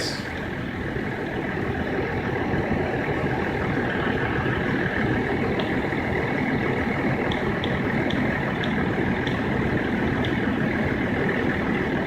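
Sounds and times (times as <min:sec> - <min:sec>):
diesel engine idling: 0:00.0 - 0:12.0
faint light ticks: 0:07.3 - 0:09.4, 0:10.2 - 0:10.4.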